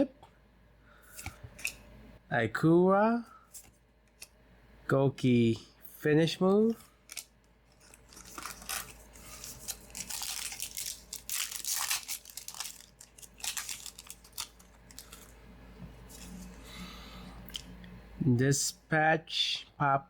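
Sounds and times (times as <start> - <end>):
foil wrapper tearing and crinkling: 6.6 - 15.4.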